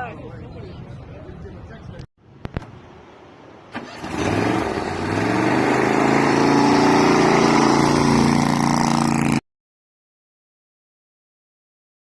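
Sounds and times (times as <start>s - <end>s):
engine revving and running: 3.8s - 9.4s.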